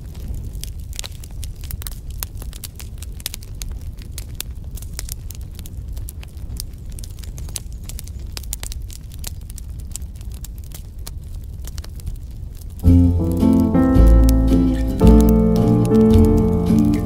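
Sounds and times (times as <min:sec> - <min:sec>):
wood fire crackling: 0:00.0 - 0:17.0
low rumble: 0:12.8 - 0:17.0.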